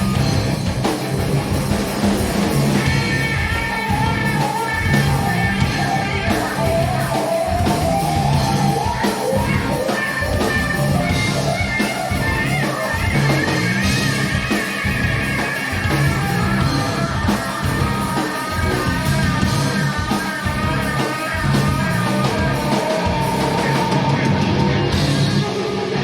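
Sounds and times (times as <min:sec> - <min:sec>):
rock band playing live: 0:00.0 - 0:26.0
sustained electric guitar notes: 0:00.0 - 0:26.0.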